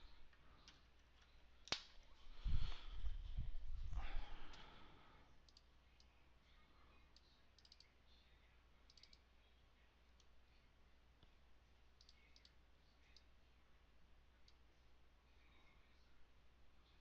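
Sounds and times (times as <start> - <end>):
computer mouse clicks: 5.4 - 6.1, 7.1 - 7.9, 8.9 - 9.2, 12.0 - 13.3.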